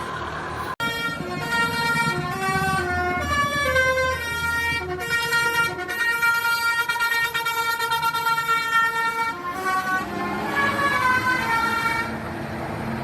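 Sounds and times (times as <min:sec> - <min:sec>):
low engine rumble: 0:00.0 - 0:13.0
musical air horn melody: 0:00.8 - 0:12.2.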